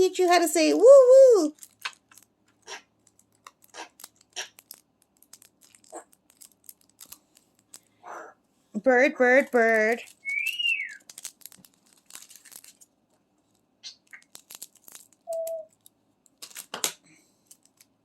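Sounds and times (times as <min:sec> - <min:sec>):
plastic packets crinkling: 0:00.1 - 0:08.0, 0:09.2 - 0:18.0
parrot whistling: 0:10.2 - 0:11.0, 0:15.3 - 0:15.7.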